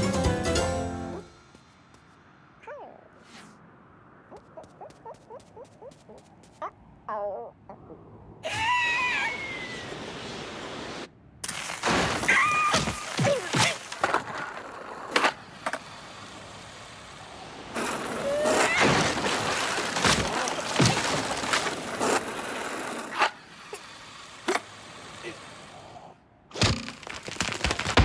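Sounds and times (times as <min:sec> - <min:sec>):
cartoon cracks thuds and crashes: 0:11.4 - 0:14.1, 0:26.5 - 0:28.0.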